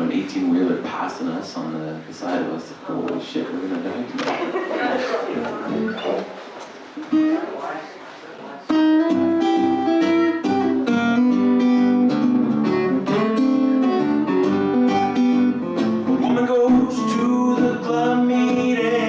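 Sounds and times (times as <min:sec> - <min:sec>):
acoustic guitar playing blues: 0:05.5 - 0:07.7, 0:08.7 - 0:19.0.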